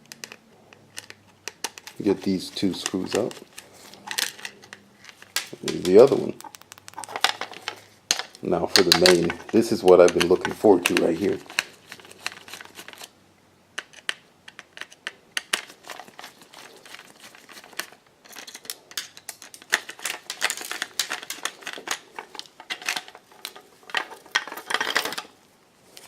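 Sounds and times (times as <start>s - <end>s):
small clicks and taps: 4.7s - 7.5s.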